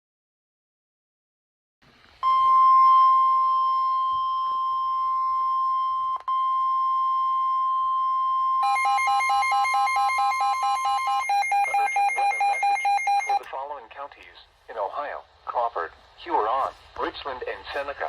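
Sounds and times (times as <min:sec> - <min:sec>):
loud steady alarm tone: 0:02.2 - 0:13.4
rapidly pulsing alarm beep: 0:02.2 - 0:13.4.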